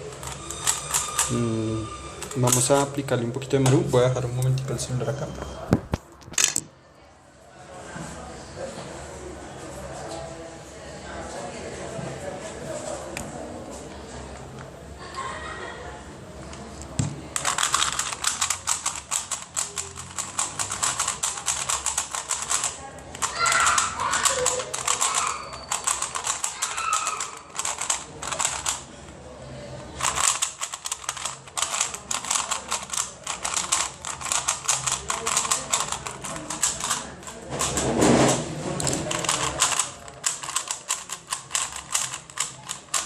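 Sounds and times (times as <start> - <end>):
puzzle cube plastic clicks: 17.4 - 28.9, 30.0 - 37.9, 38.8 - 43.0.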